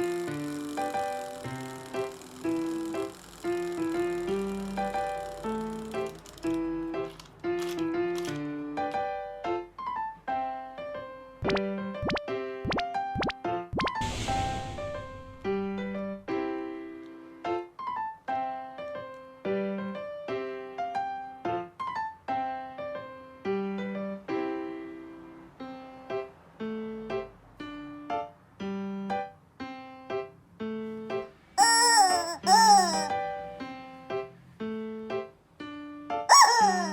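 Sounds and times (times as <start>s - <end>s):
bouncy keyboard tune: 0.0s - 6.8s, 31.6s - 33.2s, 36.3s - 36.9s.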